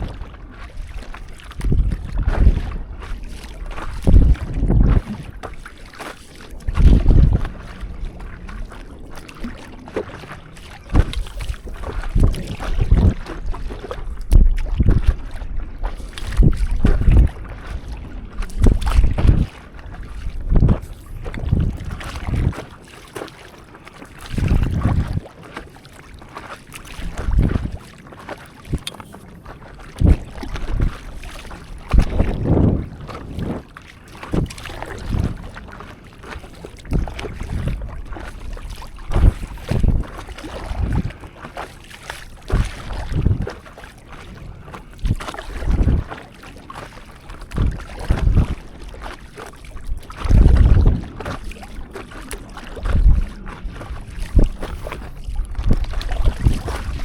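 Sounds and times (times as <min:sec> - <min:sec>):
wind buffeting microphone: 0:00.0 - 0:23.3, 0:24.0 - 0:27.9, 0:28.6 - 0:57.0
water sloshing and splashing: 0:00.0 - 0:57.0.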